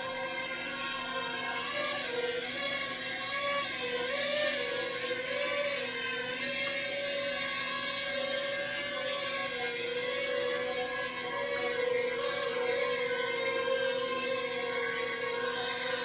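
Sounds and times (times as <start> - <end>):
toy quadcopter motors whirring: 0.0 - 16.0.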